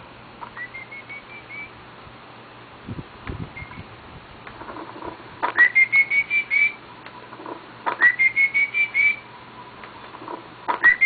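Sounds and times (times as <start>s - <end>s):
high whistling call: 0.5s - 1.8s, 3.6s - 3.9s, 5.5s - 6.8s, 7.9s - 9.3s, 10.8s - 11.0s.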